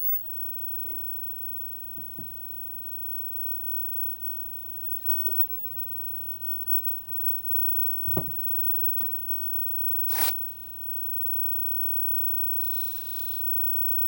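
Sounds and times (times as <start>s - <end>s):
tube tv hum: 0.0s - 14.0s
loud knock: 8.1s - 8.4s.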